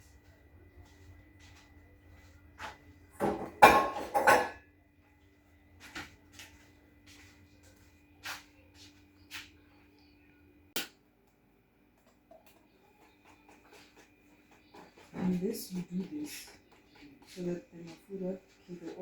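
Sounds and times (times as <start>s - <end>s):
pots and pans clattering: 3.2s - 4.6s.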